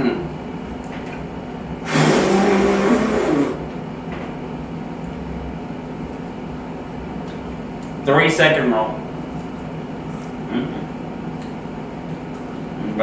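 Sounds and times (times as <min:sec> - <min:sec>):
steady hum: 0:00.0 - 0:13.0
loud breathy vocal outburst: 0:01.8 - 0:03.6.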